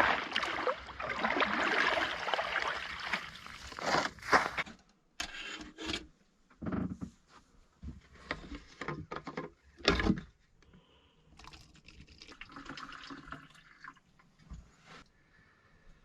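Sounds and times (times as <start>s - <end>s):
water pouring into container: 0.0s - 3.8s, 11.4s - 14.1s.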